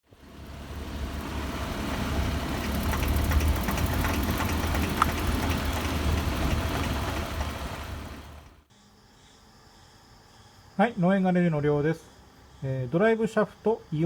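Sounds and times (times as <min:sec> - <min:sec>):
car engine low rumble: 0:00.0 - 0:08.7
light clicking and rattling: 0:02.6 - 0:08.6.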